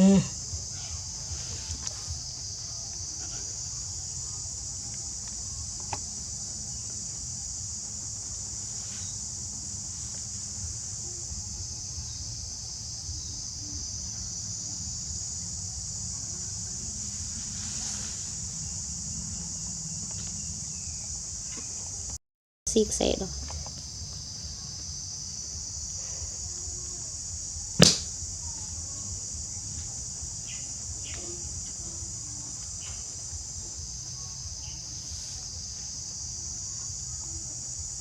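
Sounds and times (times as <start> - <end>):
insect chorus: 0.0 - 38.0
sharp click: 27.8 - 28.2.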